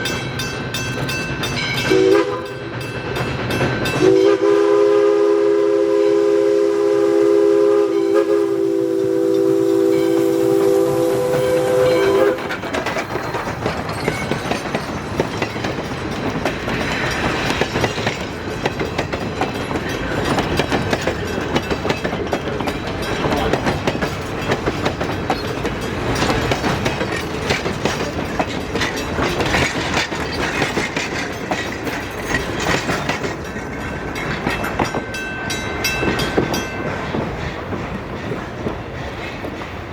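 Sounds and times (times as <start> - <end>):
train wheels clattering: 0.0 - 39.9
steam locomotive whistle: 1.9 - 2.6, 4.0 - 12.6.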